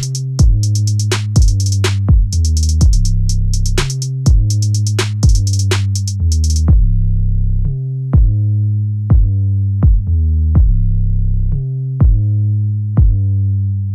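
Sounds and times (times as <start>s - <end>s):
drum machine kick beat: 0.0s - 7.0s, 8.2s - 8.4s, 9.1s - 10.9s, 12.0s - 12.3s, 13.0s - 13.3s
synthesizer bass line: 0.0s - 12.4s.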